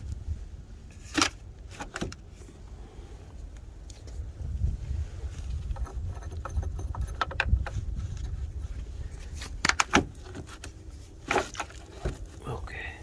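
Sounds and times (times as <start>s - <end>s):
low steady rumble: 0.0s - 13.0s
metal tools clinking: 5.7s - 7.4s.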